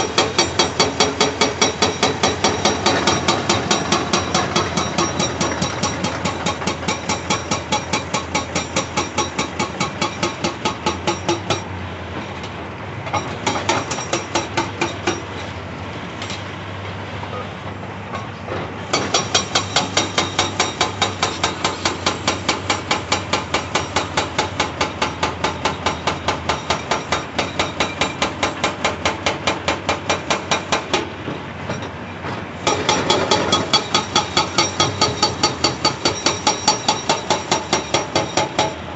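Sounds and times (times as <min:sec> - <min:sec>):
hydraulic breaker hammering rock: 0:00.0 - 0:11.7, 0:13.1 - 0:15.3, 0:18.9 - 0:31.8, 0:32.6 - 0:38.9
excavator engine running: 0:00.0 - 0:15.1.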